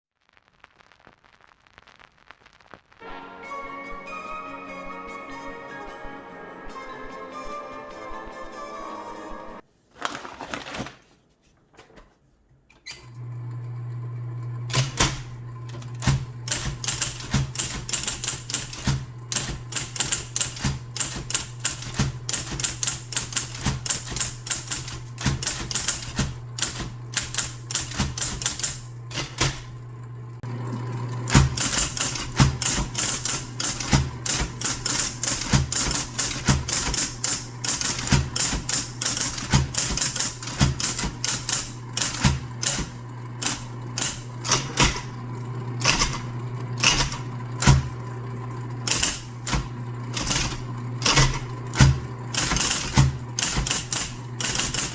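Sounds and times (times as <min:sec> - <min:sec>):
typewriter motor humming: 0:13.0 - 0:54.9
typewriter keys striking: 0:14.7 - 0:29.8, 0:31.2 - 0:45.2, 0:45.8 - 0:48.0, 0:48.9 - 0:54.9.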